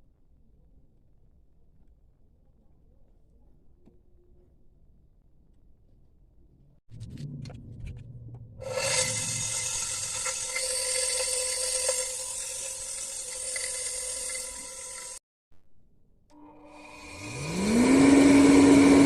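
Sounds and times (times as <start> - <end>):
low rumble: 6.9 - 9.9
electric blower whining: 8.6 - 15.2, 16.3 - 19.0.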